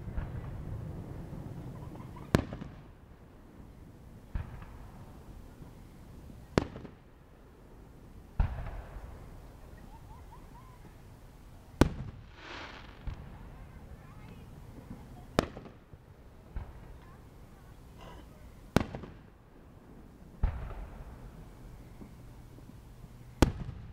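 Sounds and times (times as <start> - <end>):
fireworks bangs: 0.0 - 3.0, 4.2 - 5.8, 6.5 - 7.0, 10.8 - 23.9
fireworks crackling hiss: 0.0 - 23.9.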